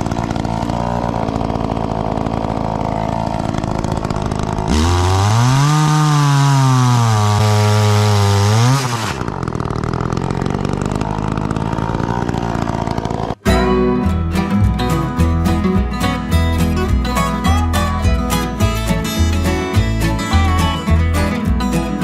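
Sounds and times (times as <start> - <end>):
chainsaw revving and idling: 0.0 - 13.4.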